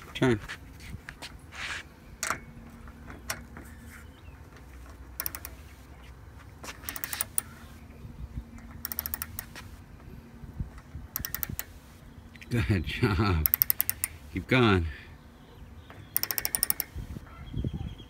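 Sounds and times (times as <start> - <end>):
ratchet wrench clicking: 5.2 - 5.6, 6.8 - 7.5, 8.6 - 9.6, 11.1 - 11.8, 13.4 - 14.2, 16.1 - 17.0.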